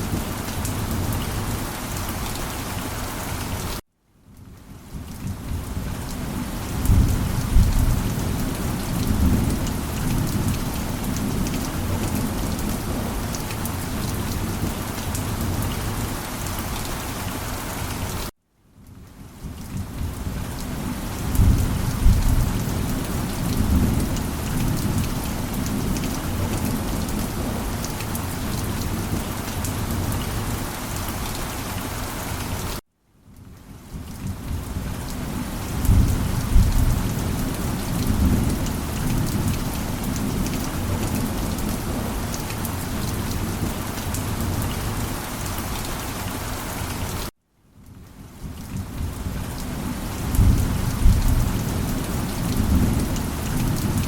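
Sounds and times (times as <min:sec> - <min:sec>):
steady rain falling: 0:00.0 - 0:54.0
low thunder rumbling: 0:06.7 - 0:13.3, 0:21.1 - 0:27.7, 0:35.7 - 0:42.3.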